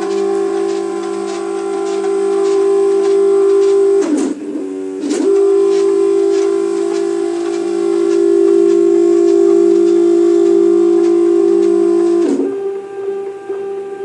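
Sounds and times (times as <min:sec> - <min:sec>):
stepper motors whining: 0:00.0 - 0:14.0.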